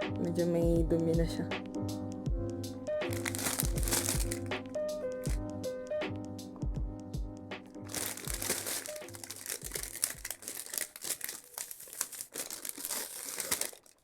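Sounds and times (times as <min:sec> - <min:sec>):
background music with steady beat: 0:00.0 - 0:10.7
plastic packaging crinkling: 0:03.1 - 0:04.5, 0:07.8 - 0:14.0.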